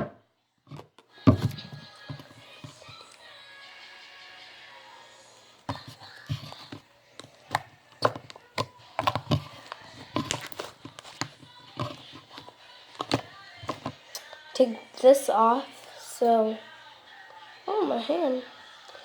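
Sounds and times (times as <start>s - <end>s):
faint music: 0.0s - 19.0s
small objects clicking and tapping: 5.7s - 14.0s.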